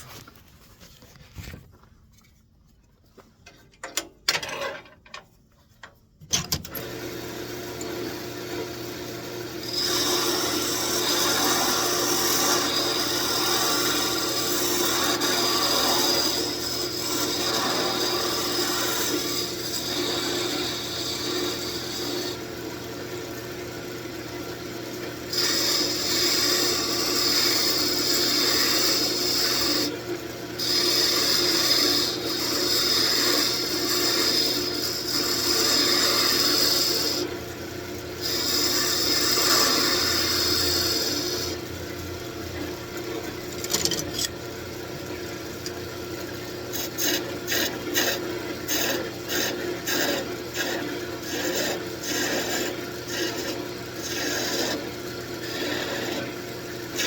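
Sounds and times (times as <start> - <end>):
wood lathe motor running: 6.8 - 23.9, 24.8 - 57.0
gouge scraping spinning wood: 8.9 - 22.6, 25.3 - 29.9, 30.6 - 37.3, 38.2 - 41.6, 43.2 - 44.3, 46.7 - 57.0.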